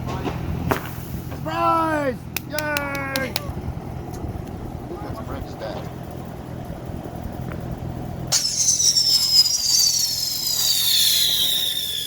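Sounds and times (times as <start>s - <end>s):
low steady rumble: 0.0s - 12.0s
whistling firework: 8.2s - 12.0s.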